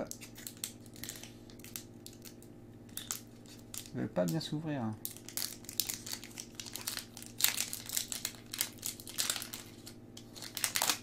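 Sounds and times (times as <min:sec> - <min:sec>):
foil wrapper crinkling: 0:00.0 - 0:11.0.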